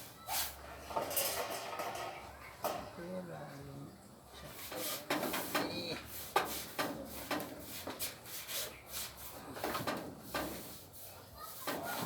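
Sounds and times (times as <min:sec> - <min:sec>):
hand tool scraping and knocking: 0:00.8 - 0:02.8, 0:04.5 - 0:10.8, 0:11.6 - 0:12.0.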